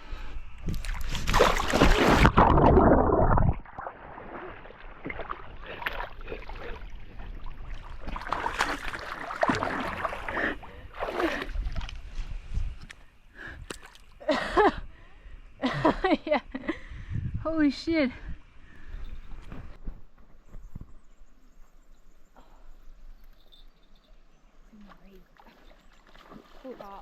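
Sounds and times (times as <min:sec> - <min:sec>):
water splashing and sloshing: 0:00.6 - 0:14.2, 0:24.6 - 0:27.0.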